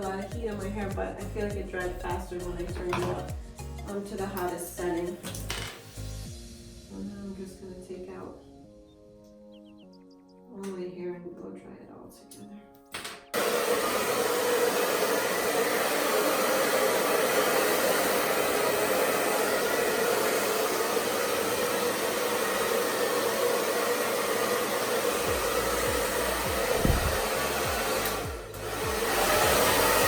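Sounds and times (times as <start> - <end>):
hair dryer blowing air: 13.4 - 30.0
low bumps: 25.3 - 29.0.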